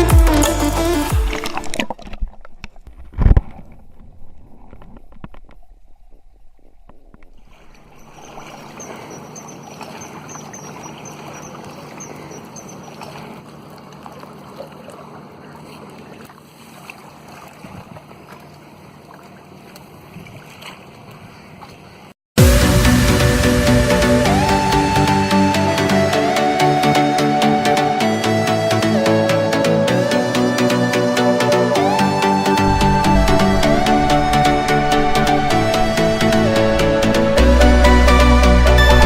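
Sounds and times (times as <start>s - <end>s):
rushing wind noise: 32.4s - 39.0s.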